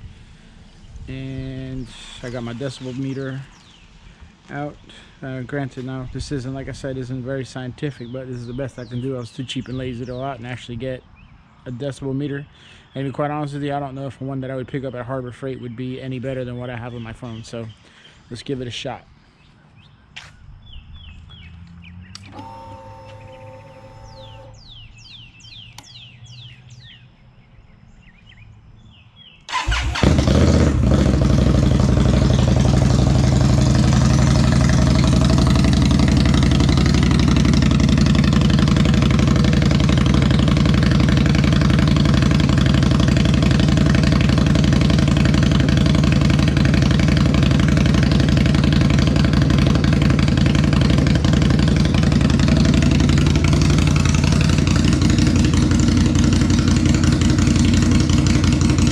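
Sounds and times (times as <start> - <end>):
motorcycle engine starting and idling: 0.5 - 3.8, 21.3 - 26.5, 29.5 - 58.9.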